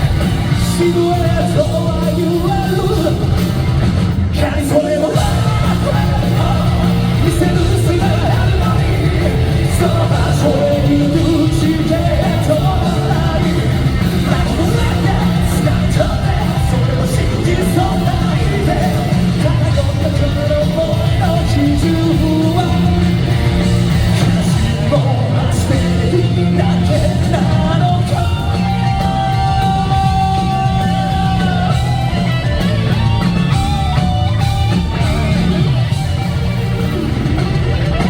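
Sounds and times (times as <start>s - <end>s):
live rock band playing: 0.0s - 38.0s.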